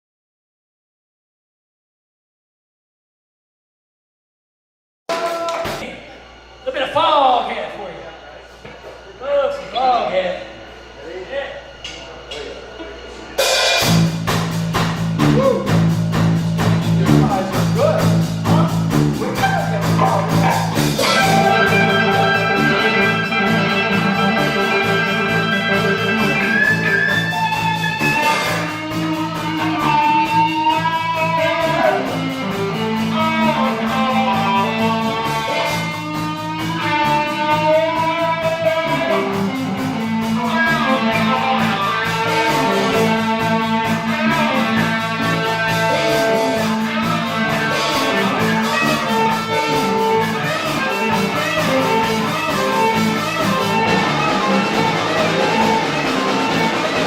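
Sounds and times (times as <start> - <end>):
drums: 5.1 - 6.9, 11.6 - 57.0
bass line: 13.0 - 57.0
electric guitar lead: 13.4 - 57.0.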